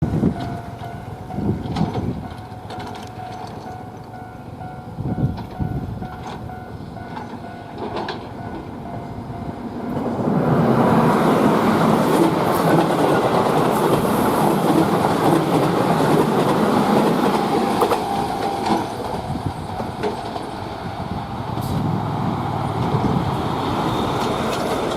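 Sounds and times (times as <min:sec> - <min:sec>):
wheels clattering over rail joints: 0:00.0 - 0:04.2, 0:05.3 - 0:09.0, 0:11.4 - 0:20.8, 0:22.4 - 0:24.9
electric train running past: 0:00.0 - 0:24.9.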